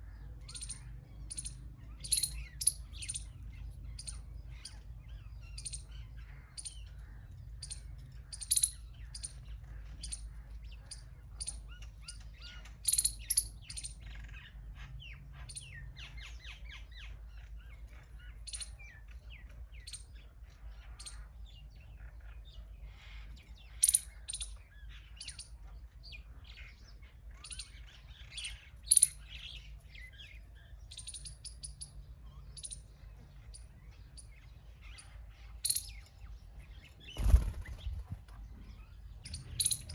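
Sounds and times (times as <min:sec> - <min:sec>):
small birds chirping: 0:00.0 - 0:39.9
steady low rumble: 0:32.6 - 0:39.9.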